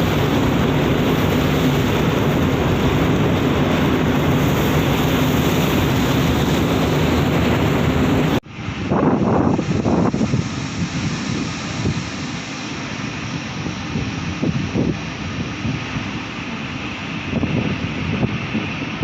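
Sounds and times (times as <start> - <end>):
low rumble: 0.0 - 12.4
wind gusts: 0.0 - 19.0.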